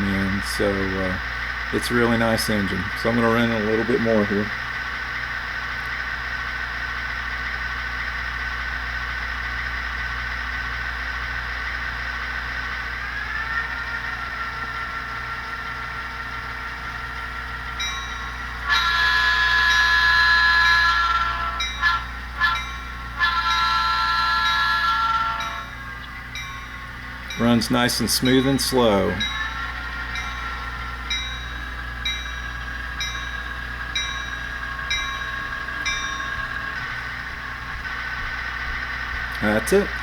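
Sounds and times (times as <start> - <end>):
model diesel locomotive engine: 0.0 - 40.0
locomotive horn blasts: 14.8 - 26.3.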